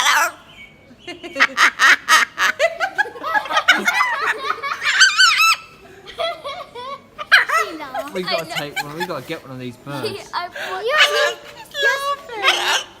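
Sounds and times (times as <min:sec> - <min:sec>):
person laughing: 0:03.0 - 0:05.0, 0:06.0 - 0:09.3.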